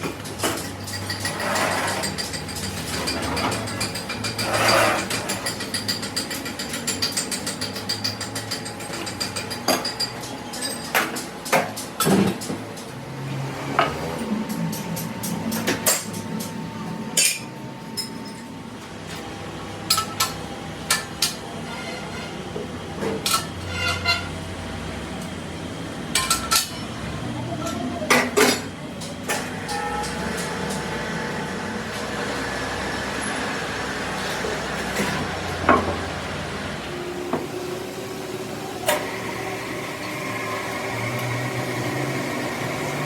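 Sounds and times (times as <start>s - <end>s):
metal tools clanking: 0.1s - 13.0s.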